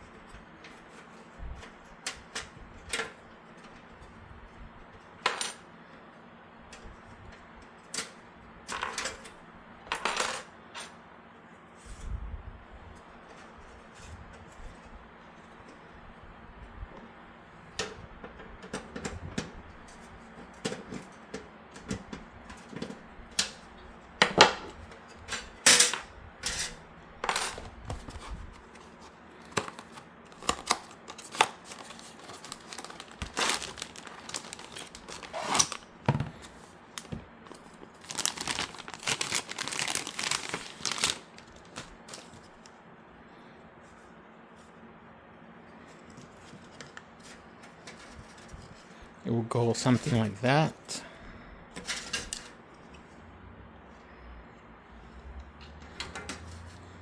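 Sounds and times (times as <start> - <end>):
clicks and knocks of handling: 24.2 - 42.7.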